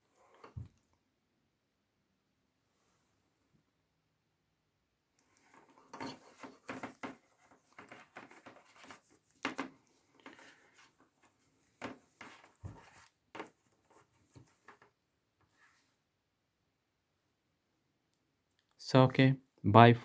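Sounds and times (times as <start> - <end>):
rubbing and rustling: 5.3 - 16.0.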